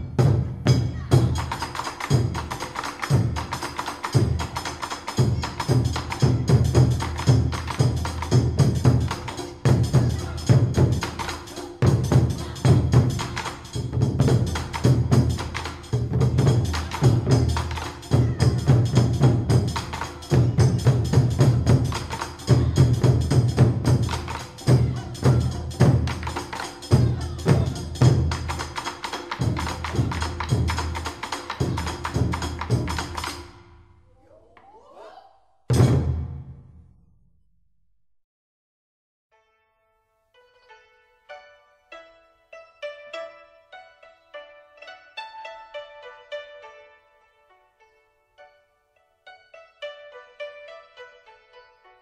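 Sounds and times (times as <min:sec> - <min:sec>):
percussive beat of clicks: 0:00.7 - 0:33.6.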